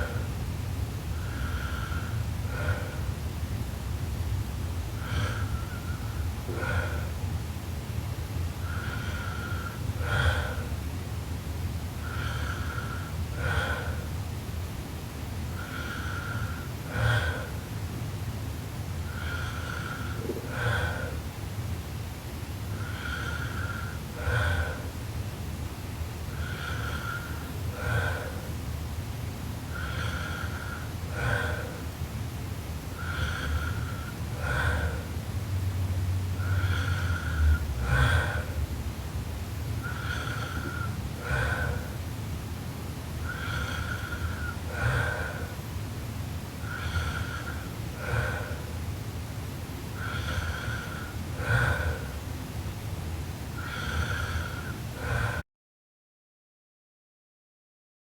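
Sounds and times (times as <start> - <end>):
girl snoring: 36.4 - 38.6, 39.8 - 41.9, 43.2 - 45.6.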